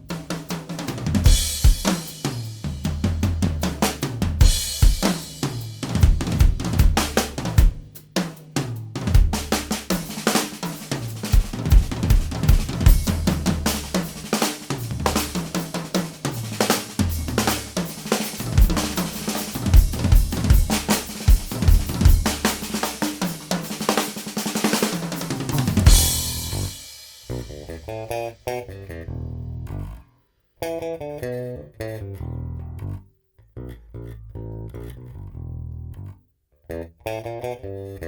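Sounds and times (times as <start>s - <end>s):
drum kit playing: 0.0s - 28.3s
bass line: 1.0s - 7.7s, 9.0s - 9.9s, 11.1s - 14.2s, 14.8s - 15.6s, 16.4s - 22.8s, 25.5s - 30.1s, 31.2s - 38.0s
cymbal crash: 25.4s - 27.6s.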